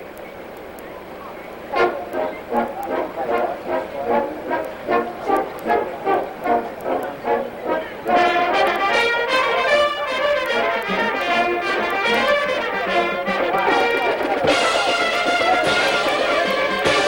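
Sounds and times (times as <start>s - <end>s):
brass ensemble playing: 1.7s - 17.0s.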